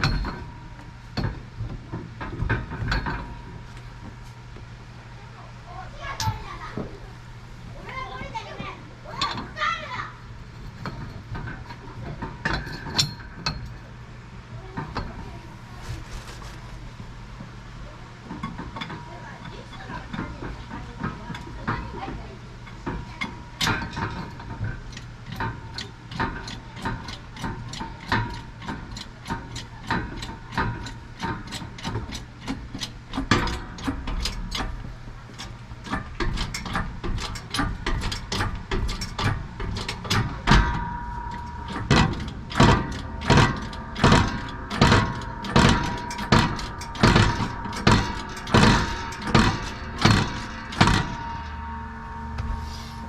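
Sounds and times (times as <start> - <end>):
hammer striking metal: 37.5 - 53.0.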